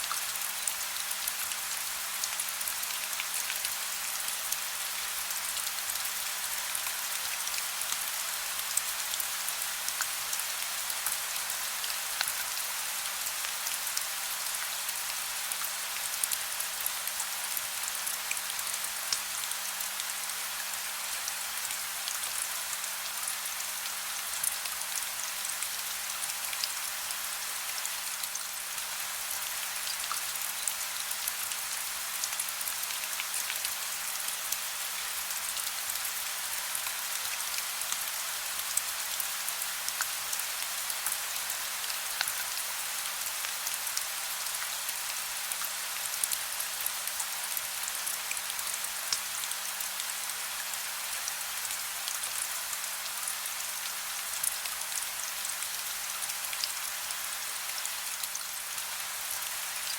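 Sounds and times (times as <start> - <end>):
soft rain patter: 0.0 - 59.9.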